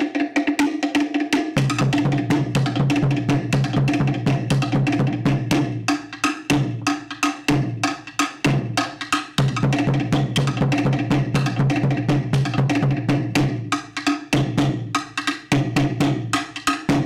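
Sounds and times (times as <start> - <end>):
sharp wooden drum strikes: 0.0 - 17.0
pulsing deep drum: 1.6 - 5.8, 9.4 - 13.7.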